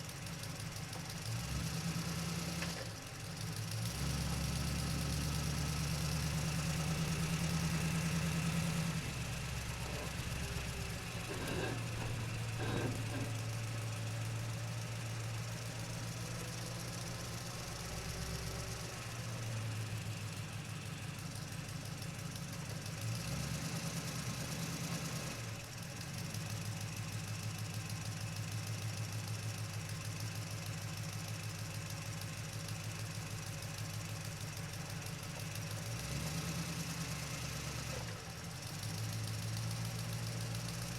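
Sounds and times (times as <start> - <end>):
truck engine droning: 4.7 - 18.6.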